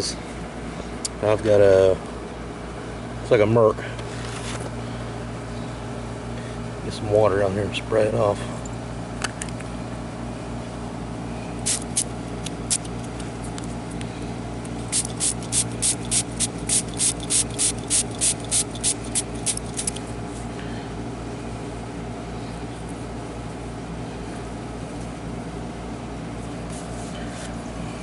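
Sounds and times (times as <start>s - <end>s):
steady low hum: 0.0s - 28.0s
spray bottle squirting water: 11.6s - 12.1s, 12.7s - 12.9s, 14.9s - 20.0s.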